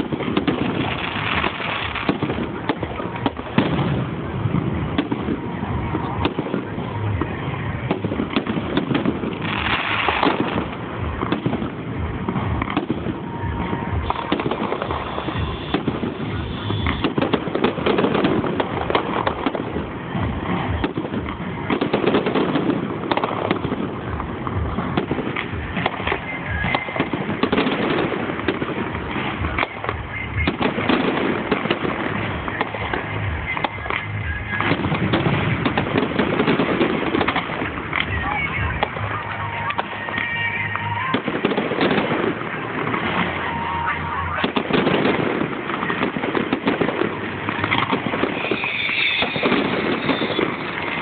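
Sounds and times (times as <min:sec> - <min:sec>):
fireworks bangs and crackling: 0:00.0 - 0:51.0.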